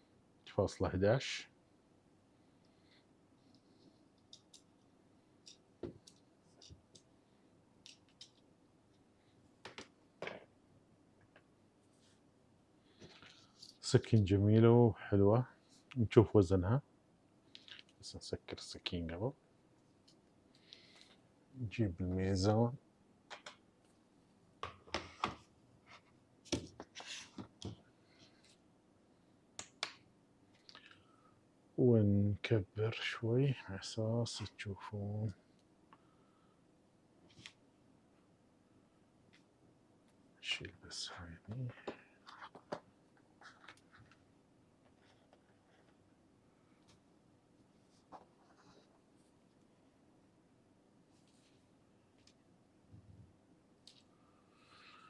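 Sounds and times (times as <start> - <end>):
faint clicks of tools handled: 3.5 - 7.1, 7.8 - 9.0.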